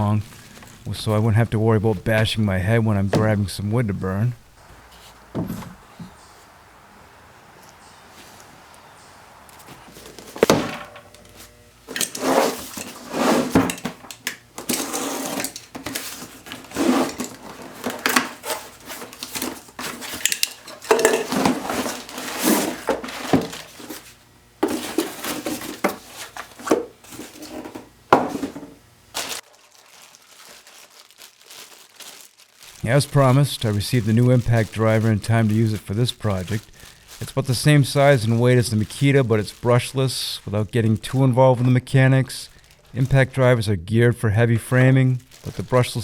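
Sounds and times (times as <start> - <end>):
wooden boards knocking and clattering: 5.3 - 6.2, 9.8 - 11.2, 15.7 - 28.8.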